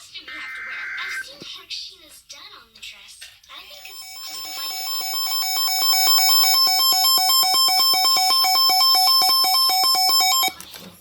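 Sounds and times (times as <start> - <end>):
electronic alert tone warbling: 3.7 - 10.5
steady high whine: 3.7 - 10.5.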